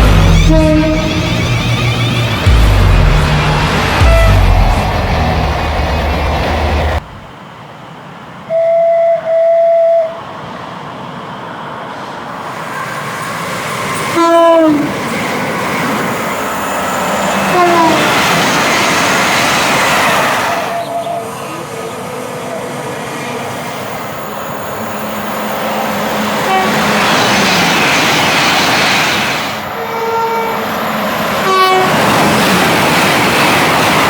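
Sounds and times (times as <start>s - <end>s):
train horn blasts: 0.0s - 1.6s, 2.4s - 4.9s, 14.1s - 14.9s, 17.4s - 18.2s, 26.4s - 27.0s, 29.8s - 30.6s, 31.4s - 32.0s
two-tone train horn: 0.0s - 1.6s, 4.0s - 4.8s, 8.5s - 10.3s, 14.1s - 14.9s, 17.4s - 18.2s, 26.4s - 27.0s, 29.8s - 30.6s, 31.4s - 32.0s
train passing at speed: 0.0s - 8.6s, 9.2s - 34.0s.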